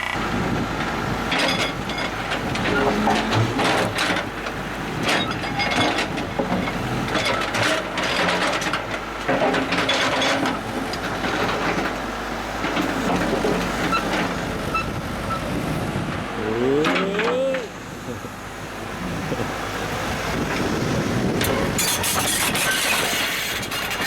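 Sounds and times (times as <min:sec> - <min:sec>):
diesel engine running: 0:00.0 - 0:24.0
metallic clanks and scrapes: 0:01.3 - 0:04.3, 0:05.0 - 0:10.6, 0:21.4 - 0:24.0.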